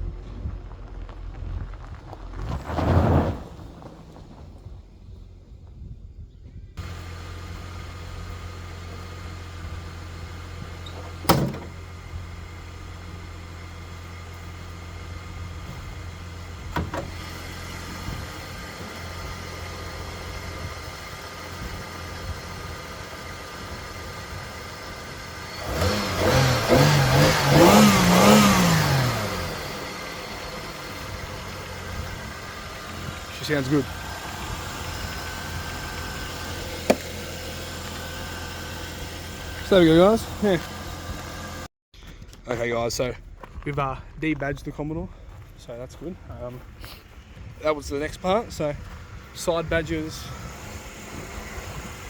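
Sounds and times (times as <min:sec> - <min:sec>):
car engine idling: 0:00.0 - 0:52.0
car engine revving: 0:06.8 - 0:41.7.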